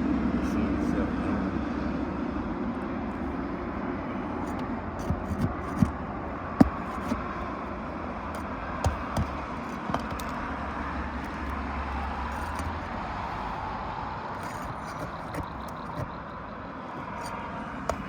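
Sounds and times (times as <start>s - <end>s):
outdoor background noise: 0.0s - 18.0s
tools knocking on nails: 8.8s - 10.4s.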